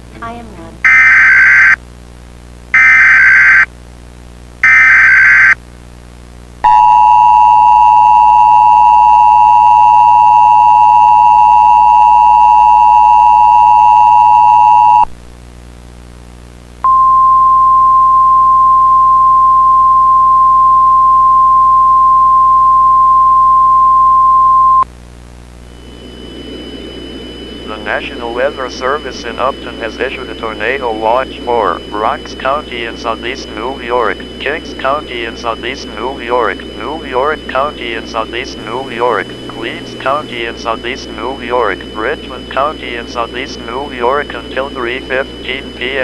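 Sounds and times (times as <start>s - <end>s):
buzzy data screech: 0.8s - 1.8s, 2.8s - 3.7s, 4.6s - 5.6s, 26.0s - 46.0s
single-pitch alarm tone: 0.8s - 1.8s, 2.8s - 3.7s, 4.6s - 5.6s, 6.6s - 15.1s, 16.8s - 24.9s, 25.7s - 46.0s
two-tone alert signal: 4.6s - 5.6s.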